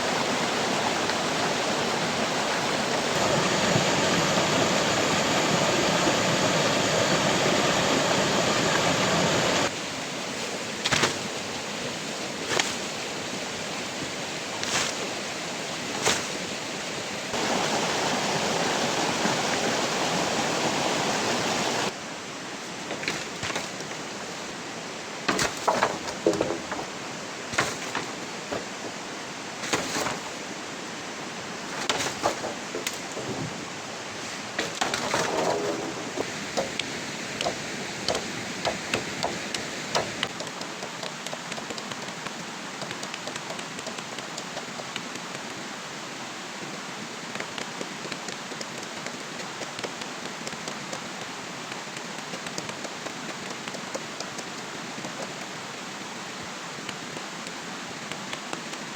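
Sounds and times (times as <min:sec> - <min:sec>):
steady rain falling: 0:00.0 - 0:58.9
sharp knocks and cracking: 0:25.3 - 0:30.3, 0:31.7 - 0:33.6, 0:34.6 - 0:45.0.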